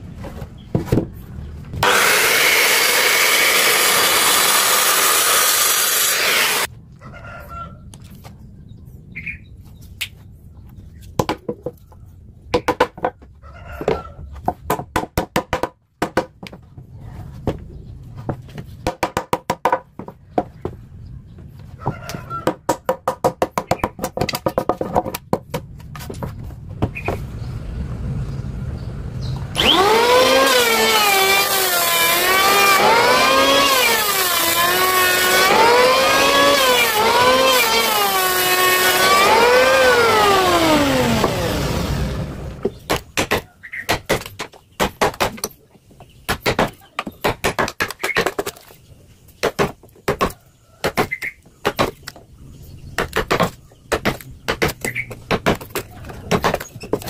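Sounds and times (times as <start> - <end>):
power tool motor whining: 1.8 - 6.7, 29.4 - 42.6.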